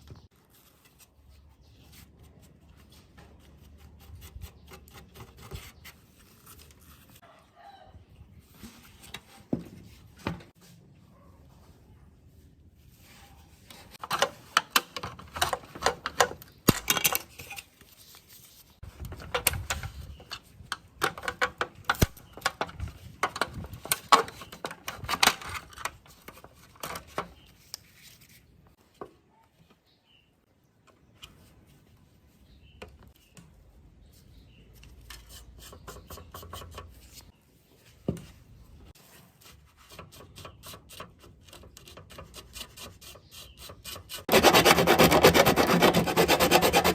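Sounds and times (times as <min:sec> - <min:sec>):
tools clicking and scraping: 0:13.7 - 0:18.2.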